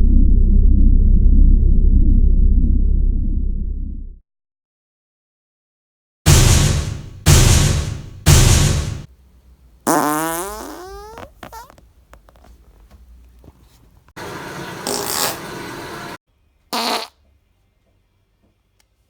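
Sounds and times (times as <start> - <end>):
farts: 9.9 - 11.8, 14.9 - 15.4, 16.7 - 17.2.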